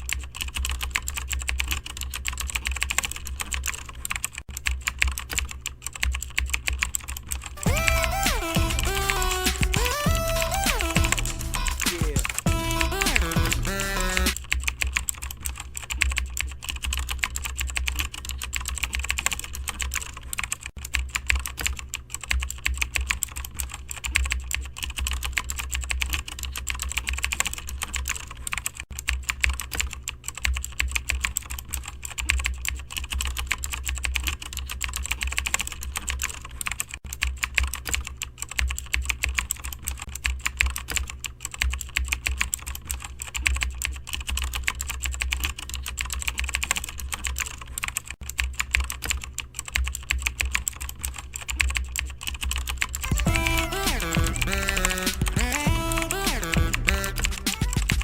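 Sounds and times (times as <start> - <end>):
fast typing on keyboard: 0.0 - 58.0
steady low hum: 5.9 - 20.3, 52.0 - 58.0.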